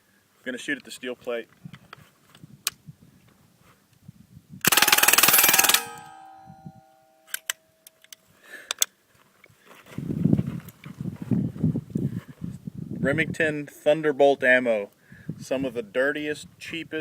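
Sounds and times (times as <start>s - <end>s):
sharp clicks: 4.6s - 6.4s
suppressed full-auto gunfire: 4.7s - 6.4s
steel plate ringing: 4.7s - 7.5s.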